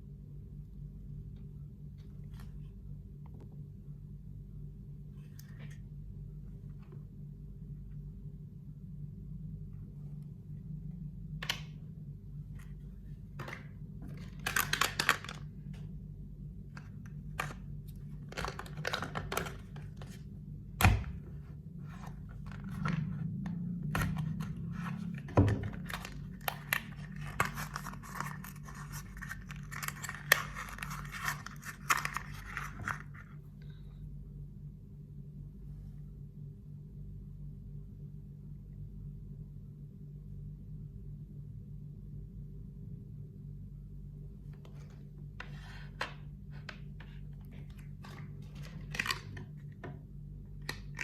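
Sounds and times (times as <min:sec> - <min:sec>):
steady low hum: 0:00.0 - 0:51.0
packaging tearing and rustling: 0:24.2 - 0:33.2, 0:47.6 - 0:49.6.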